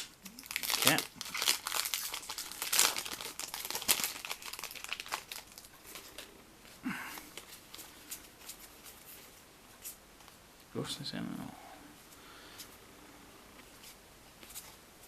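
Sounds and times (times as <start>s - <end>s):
foil wrapper tearing and crinkling: 0.0s - 6.3s.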